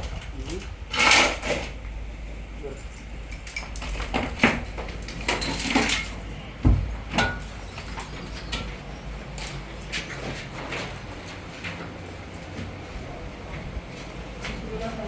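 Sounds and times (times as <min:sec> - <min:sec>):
low steady hum: 0:00.0 - 0:15.0
objects knocking and clattering: 0:03.4 - 0:08.8
dull thump: 0:06.6 - 0:07.0.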